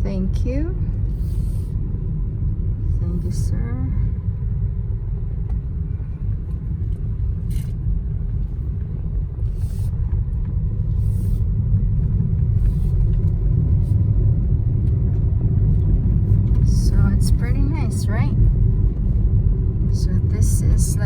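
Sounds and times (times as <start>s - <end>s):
car engine and tyres rumbling: 0.0s - 21.0s.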